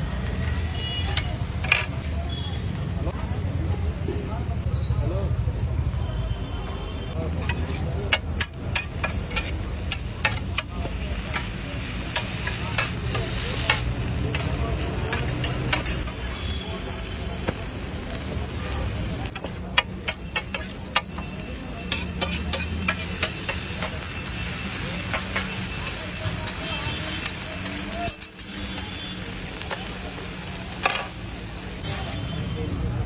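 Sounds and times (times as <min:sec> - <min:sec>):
food sizzling on a griddle: 0:00.0 - 0:33.0
metal spatula scraping a pan: 0:21.8 - 0:24.5.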